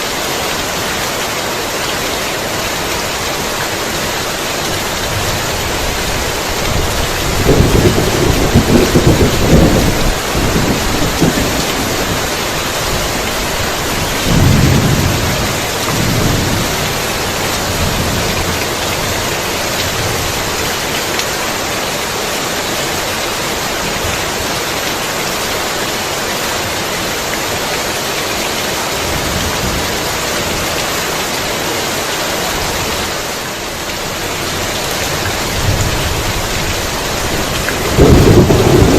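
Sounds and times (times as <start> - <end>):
heavy rain: 0.0 - 38.9
rolling thunder: 5.1 - 20.4, 35.2 - 38.9.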